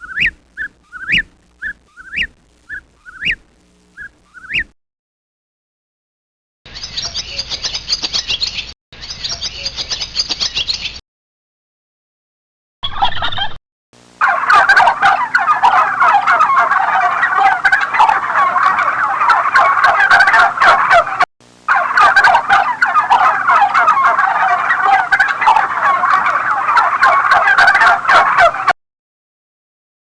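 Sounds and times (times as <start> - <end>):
turkeys gobbling: 0.0 - 3.4, 4.0 - 4.6, 14.2 - 28.8.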